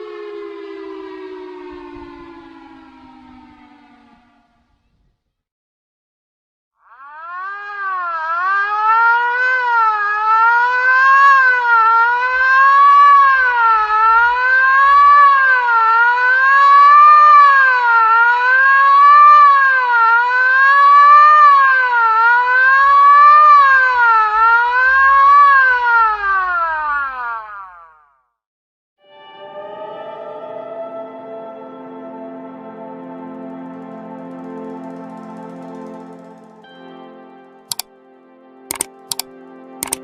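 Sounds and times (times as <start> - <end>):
warning siren wailing: 0.0 - 5.0, 6.8 - 28.1.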